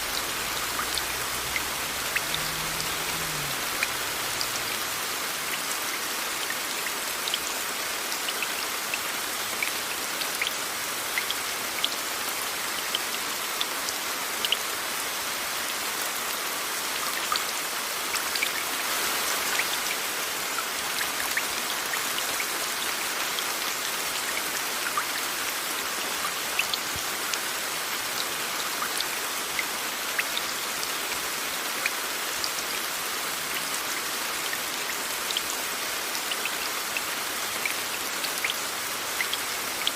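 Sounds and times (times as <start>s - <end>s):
steady rain hiss: 0.0s - 39.9s
raindrops ticking: 0.1s - 5.0s.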